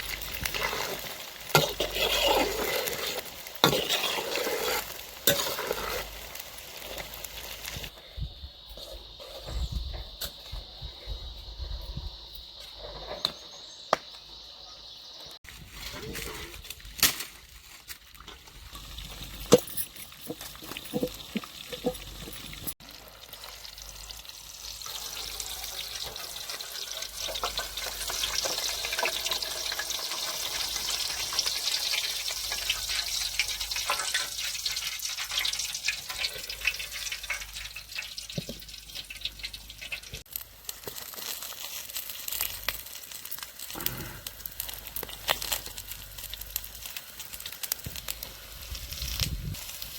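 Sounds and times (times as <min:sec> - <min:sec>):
food sizzling in hot oil: 0:00.0 - 0:49.9.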